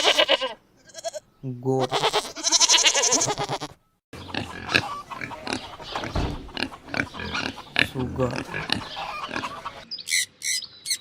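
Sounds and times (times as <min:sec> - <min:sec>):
goat bleating: 0:00.0 - 0:09.7
pig grunting: 0:04.2 - 0:09.8.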